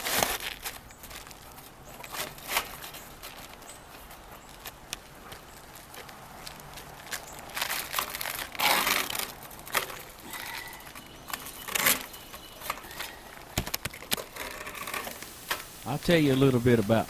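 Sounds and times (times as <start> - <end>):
roofing shingles rustling and scraping: 0.0 - 17.0.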